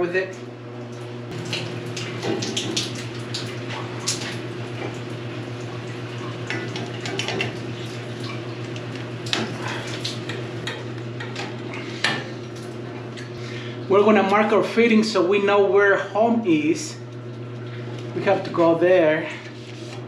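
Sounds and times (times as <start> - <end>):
steady low hum: 0.0 - 20.0
water draining and dripping: 0.8 - 13.3.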